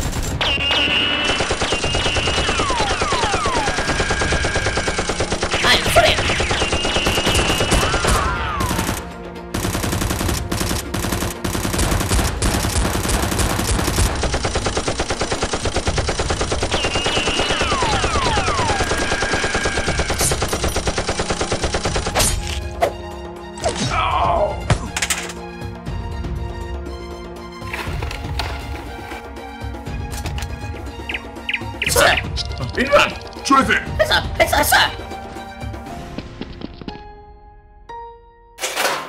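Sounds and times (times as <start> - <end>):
rapid automatic gunfire: 0.0 - 22.3.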